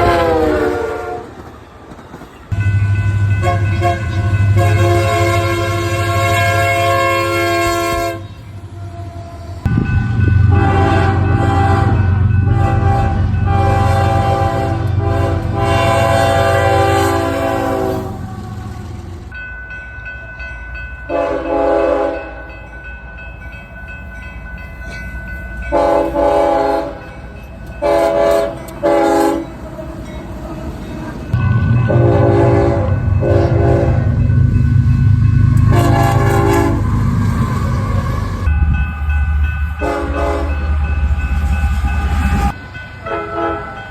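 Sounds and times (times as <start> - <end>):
locomotive air horn blasts: 0.0 - 1.4, 3.1 - 18.8, 21.1 - 22.3, 25.7 - 27.0, 27.8 - 29.5, 31.4 - 38.5, 39.8 - 40.9, 42.0 - 43.9
train rumbling past: 0.0 - 43.9.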